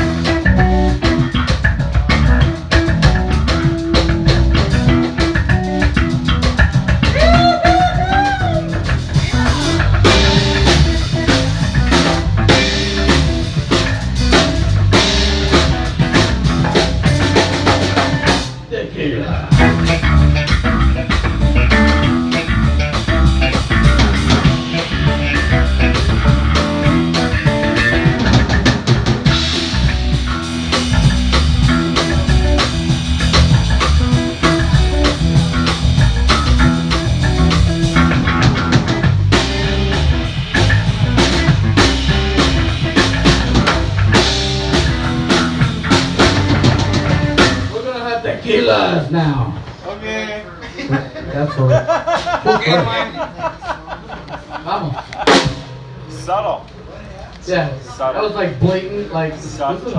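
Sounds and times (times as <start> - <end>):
loud rock music: 0.0 - 18.7, 19.5 - 47.9, 55.3 - 56.1.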